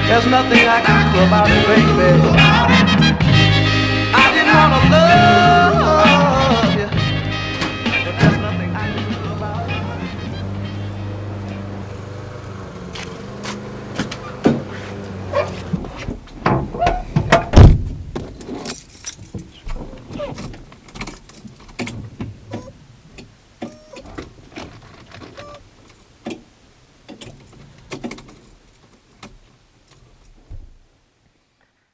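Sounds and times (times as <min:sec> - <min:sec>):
metal tools clinking: 0:18.4 - 0:19.6.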